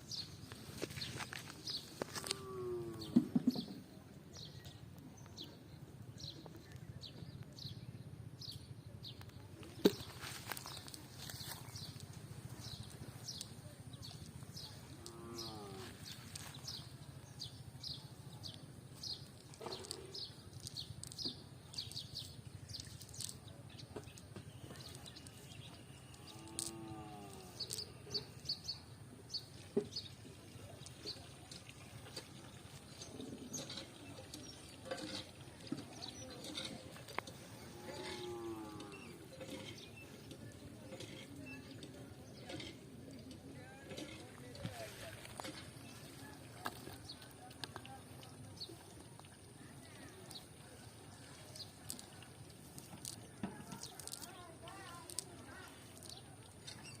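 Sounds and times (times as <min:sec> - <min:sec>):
small birds chirping: 0:00.1 - 0:57.0
cattle mooing: 0:15.0 - 0:16.0, 0:37.7 - 0:39.1.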